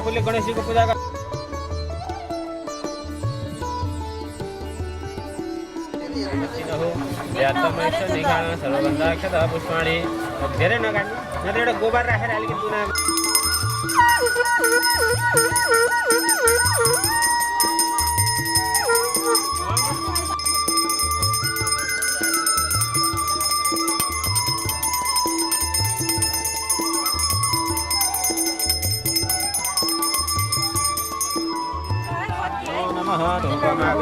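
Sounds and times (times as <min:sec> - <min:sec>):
reedy wind melody: 0:06.3 - 0:34.0
jingling percussion: 0:12.9 - 0:34.0.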